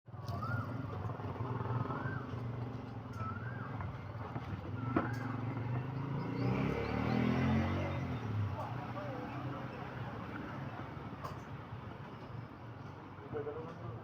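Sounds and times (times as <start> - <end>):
rising and falling chirp: 4.8 - 8.3.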